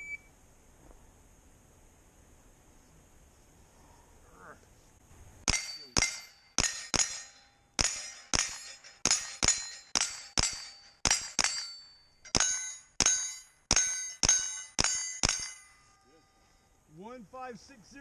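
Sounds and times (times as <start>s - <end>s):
steel plate ringing: 5.5s - 16.8s
rifle shots: 7.8s - 15.6s.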